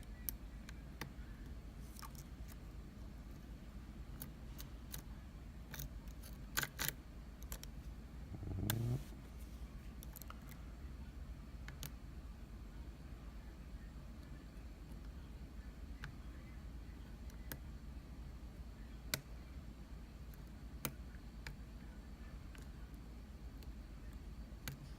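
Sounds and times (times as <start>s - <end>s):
low hum rising in pitch: 8.2s - 9.3s.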